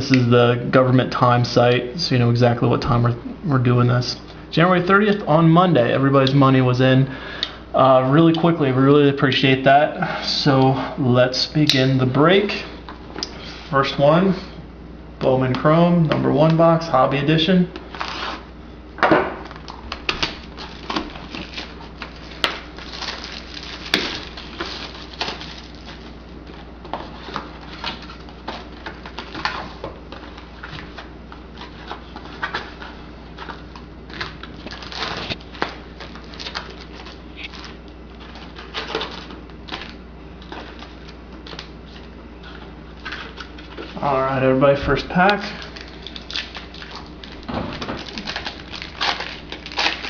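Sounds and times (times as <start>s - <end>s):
steady low hum: 0.0s - 50.0s
packaging crinkling: 19.5s - 44.0s, 45.2s - 50.0s.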